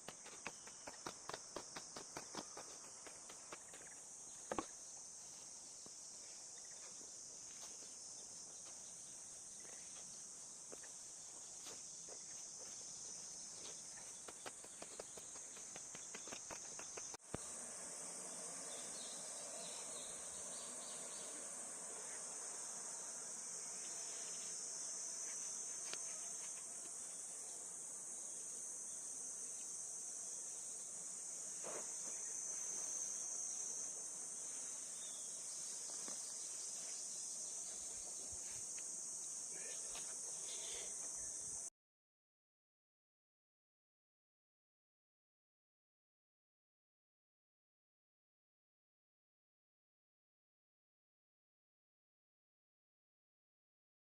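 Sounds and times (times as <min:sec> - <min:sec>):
insects chorus: 0:00.0 - 0:41.7.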